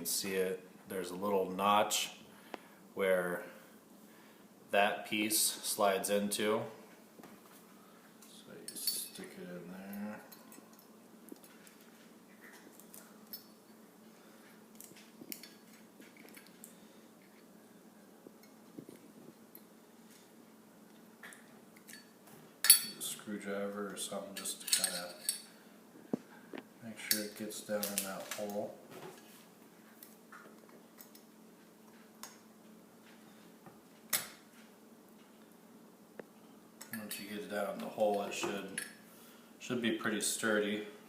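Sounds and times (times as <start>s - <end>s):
metallic clicks of parts handled: 24.4s - 25.5s.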